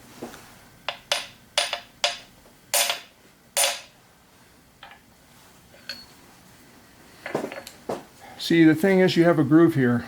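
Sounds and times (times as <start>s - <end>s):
small hammer tapping metal: 0.9s - 3.9s.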